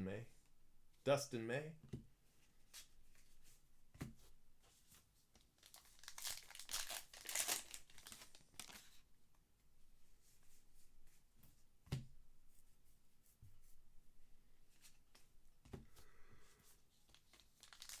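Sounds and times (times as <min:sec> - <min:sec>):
card pack wrapper crinkling: 0:05.6 - 0:09.0, 0:17.1 - 0:18.0.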